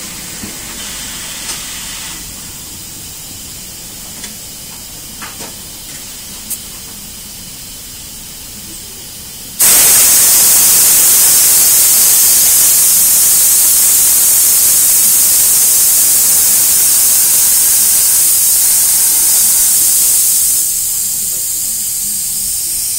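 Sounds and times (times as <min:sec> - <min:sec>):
compressed air hissing: 0:00.0 - 0:22.9.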